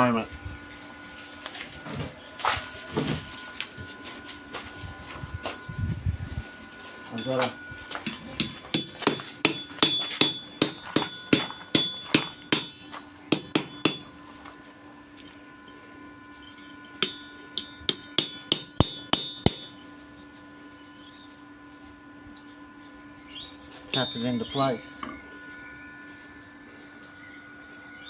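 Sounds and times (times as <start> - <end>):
hammer tapping metal on anvil: 7.2 - 14.2, 16.4 - 19.9.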